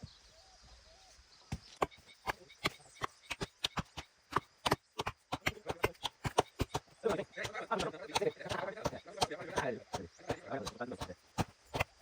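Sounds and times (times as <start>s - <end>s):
chopping dry wood: 1.5s - 12.0s.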